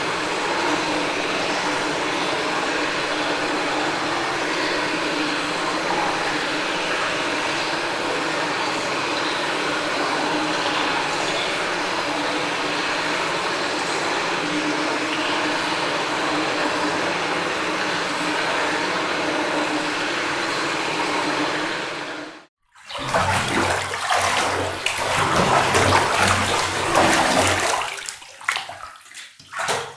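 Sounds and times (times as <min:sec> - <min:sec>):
running water: 0:00.0 - 0:29.9
water splashing into tub: 0:22.7 - 0:29.9.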